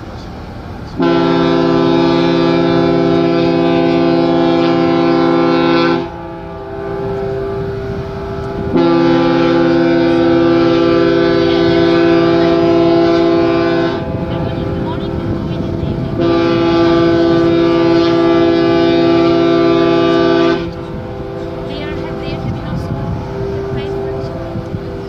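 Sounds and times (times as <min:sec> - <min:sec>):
ship horn blasts: 0:00.9 - 0:25.0.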